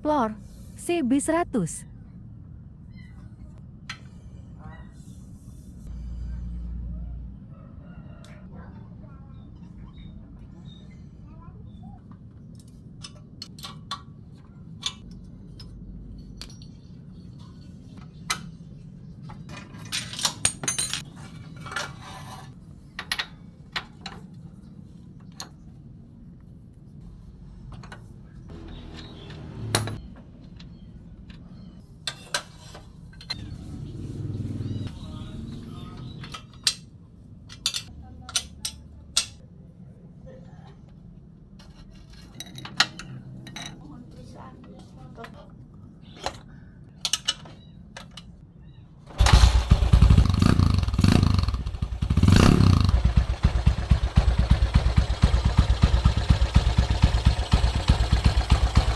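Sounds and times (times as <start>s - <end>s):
metal tools clinking and jangling: 13.0s - 17.8s, 19.5s - 22.1s.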